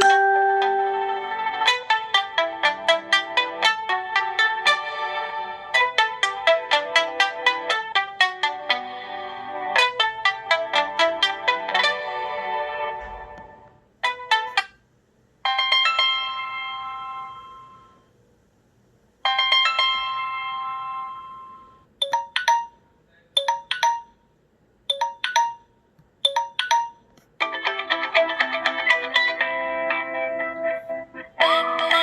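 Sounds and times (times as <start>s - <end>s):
two-note chime: 0.0s - 1.3s
bell-like chords: 0.0s - 1.7s, 19.4s - 24.2s, 24.9s - 25.7s
melodic ringtone: 0.0s - 12.9s, 15.4s - 18.0s, 19.2s - 24.3s, 24.9s - 29.7s.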